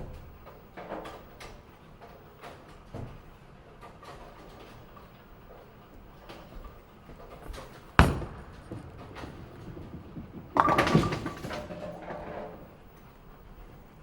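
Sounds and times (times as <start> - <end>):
bowling ball rolling rumble: 6.0 - 14.0
bowling pins crashing: 7.2 - 13.7
bowling ball thud: 7.4 - 13.0.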